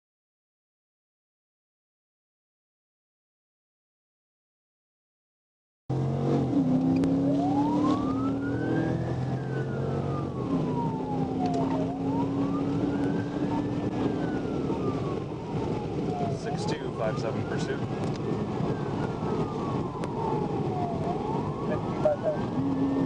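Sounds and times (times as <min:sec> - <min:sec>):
engine and road noise: 0:05.9 - 0:23.0
police siren wailing: 0:06.4 - 0:23.0.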